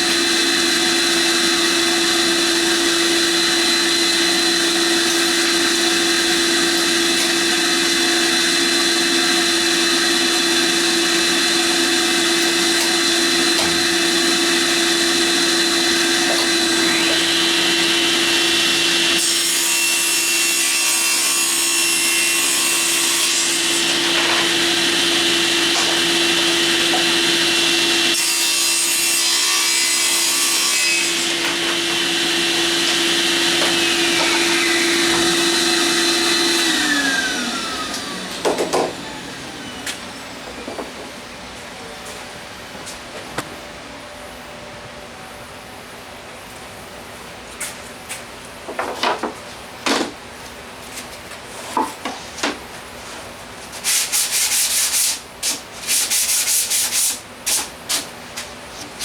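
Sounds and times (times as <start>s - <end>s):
power tool motor whine: 0.0s - 19.2s, 31.0s - 40.4s
rasping wood cutting: 0.0s - 40.2s.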